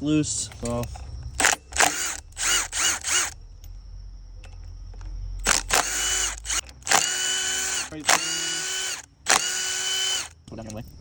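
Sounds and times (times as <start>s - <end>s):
power driver spinning bolts: 0.4s - 3.4s, 5.4s - 11.0s.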